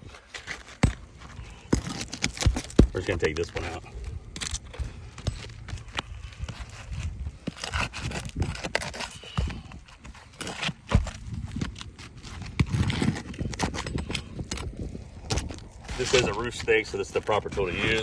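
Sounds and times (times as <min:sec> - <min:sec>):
pry tool scraping shingles: 0:00.0 - 0:18.0.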